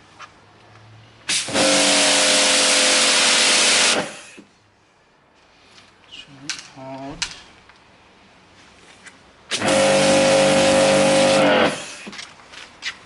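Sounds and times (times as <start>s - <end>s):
pressure washer spraying: 1.3s - 4.4s, 9.5s - 12.1s.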